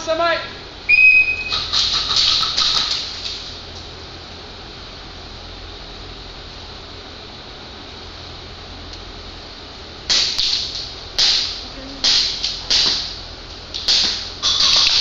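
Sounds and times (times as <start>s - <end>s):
airsoft gun shots: 11.2s - 13.2s.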